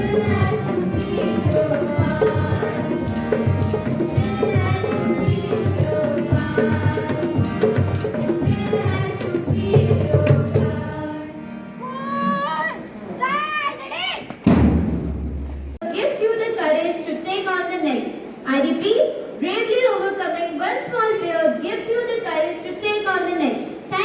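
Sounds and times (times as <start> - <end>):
music with jingling percussion: 0.0 - 11.1.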